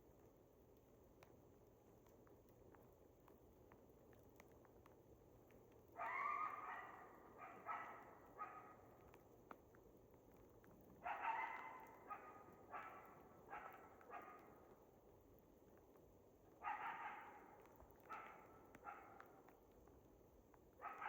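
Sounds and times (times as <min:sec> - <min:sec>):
faint dog barking: 0:05.9 - 0:09.2, 0:11.0 - 0:14.8, 0:16.6 - 0:19.6, 0:20.7 - 0:21.0.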